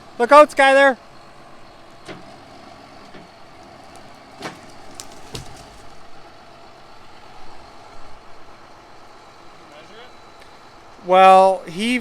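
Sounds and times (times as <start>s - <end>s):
tractor engine running: 0.0s - 11.0s
sharp knocks: 4.0s - 6.0s.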